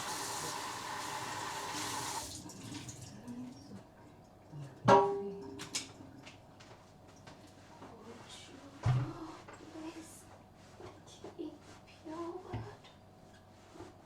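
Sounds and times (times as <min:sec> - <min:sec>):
tap running into sink: 0:00.0 - 0:02.4.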